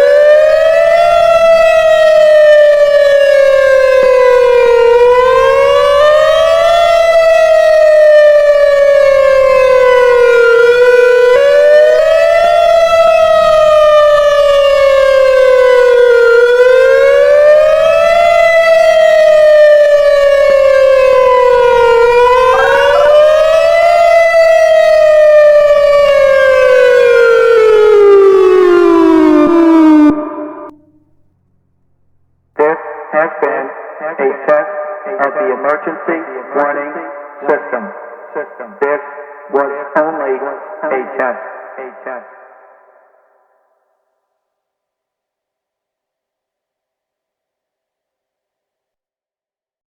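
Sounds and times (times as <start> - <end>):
warning siren wailing: 0.0 - 31.4.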